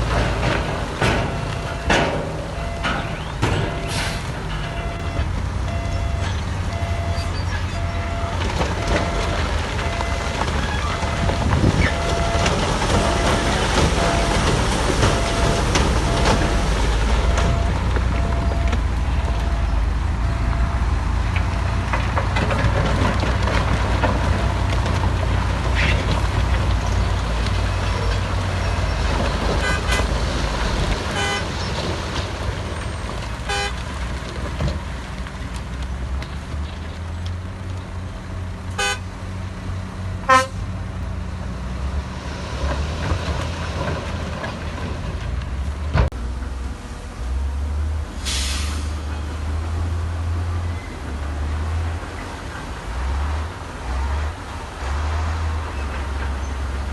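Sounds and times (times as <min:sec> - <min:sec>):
heavy machinery engine drone: 0:00.0 - 0:56.9
short sharp horn toots: 0:40.3 - 0:40.6.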